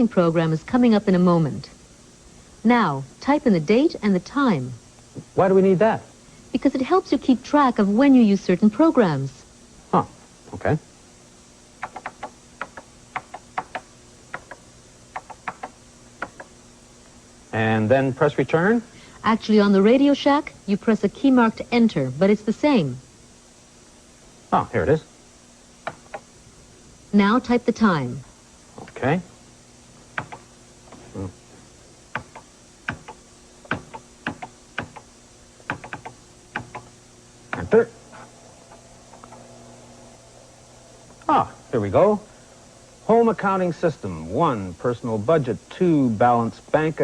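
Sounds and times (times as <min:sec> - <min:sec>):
keyboard keystroke clicks: 0:11.8 - 0:14.6, 0:30.2 - 0:30.4, 0:35.7 - 0:36.9.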